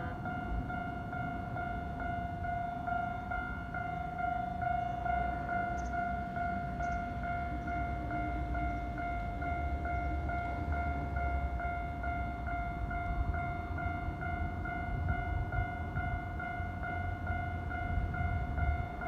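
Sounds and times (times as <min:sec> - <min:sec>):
level-crossing warning bell: 0:00.0 - 0:19.0
train rumbling: 0:00.0 - 0:19.0.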